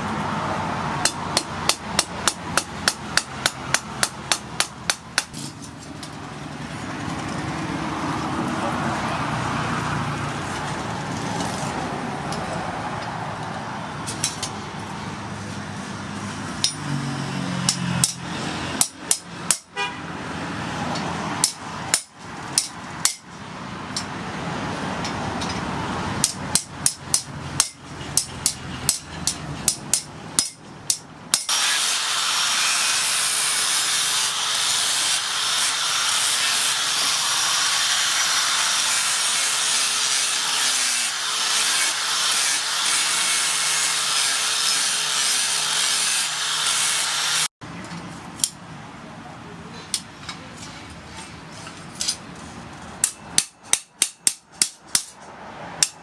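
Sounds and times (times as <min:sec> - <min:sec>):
hammer striking steel on anvil: 0:01.0 - 0:05.5, 0:16.6 - 0:16.9, 0:17.6 - 0:18.2, 0:18.8 - 0:19.8, 0:21.4 - 0:23.3, 0:26.2 - 0:31.9, 0:53.0 - 0:55.2, 0:55.8 - 0:56.0.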